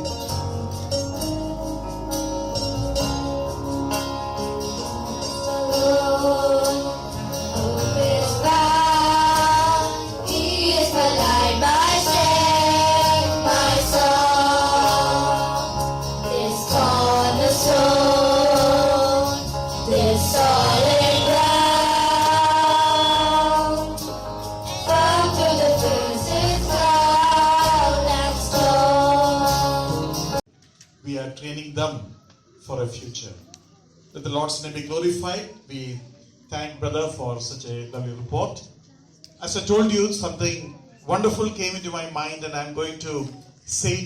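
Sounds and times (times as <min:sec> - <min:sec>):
instrumental accompaniment with beat: 0:00.0 - 0:30.4
gospel singing: 0:04.6 - 0:30.4.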